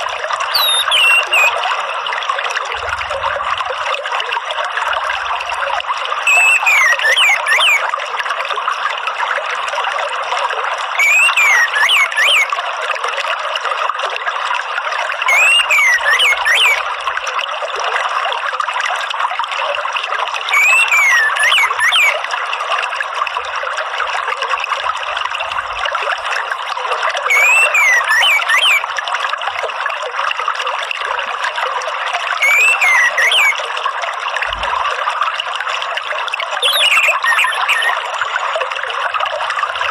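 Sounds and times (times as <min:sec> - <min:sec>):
water trickling: 0:00.0 - 0:39.9
thrush whistling: 0:00.5 - 0:01.6, 0:06.3 - 0:07.8, 0:11.0 - 0:12.5, 0:15.3 - 0:16.8, 0:20.5 - 0:22.2, 0:27.3 - 0:28.8, 0:32.4 - 0:33.6, 0:36.6 - 0:38.0.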